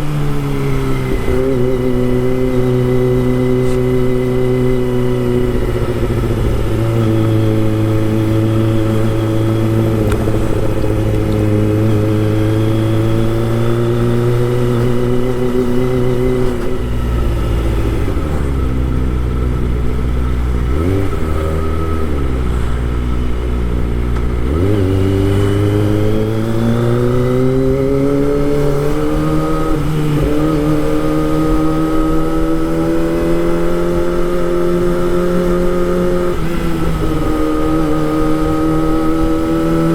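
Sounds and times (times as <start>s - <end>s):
motorcycle engine revving: 0.0s - 39.9s.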